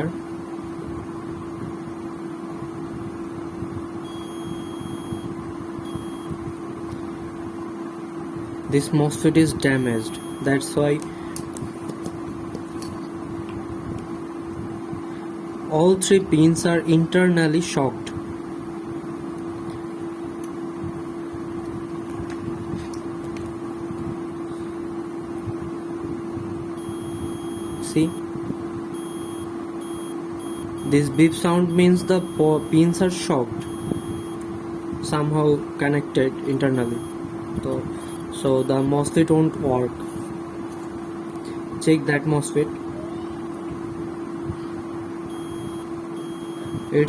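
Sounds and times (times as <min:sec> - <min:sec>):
steady low hum: 0:00.0 - 0:47.0
multimeter continuity beeps: 0:04.0 - 0:06.4, 0:09.5 - 0:10.8, 0:26.8 - 0:28.3, 0:28.9 - 0:34.5, 0:36.5 - 0:39.4, 0:45.3 - 0:47.0.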